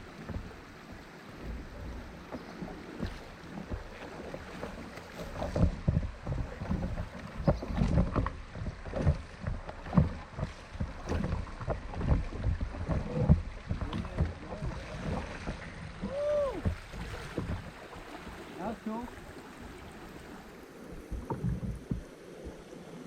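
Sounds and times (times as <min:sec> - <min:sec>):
kayak hull knocks and splashes: 0:00.0 - 0:23.0
paddle splashing: 0:00.0 - 0:23.0.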